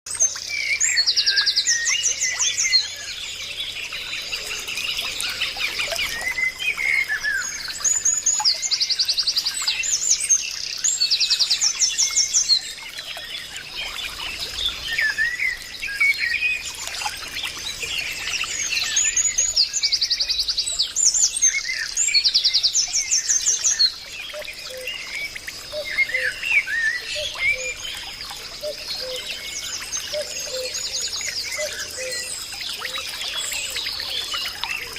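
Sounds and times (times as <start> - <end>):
birds chirping: 0.1 - 34.9.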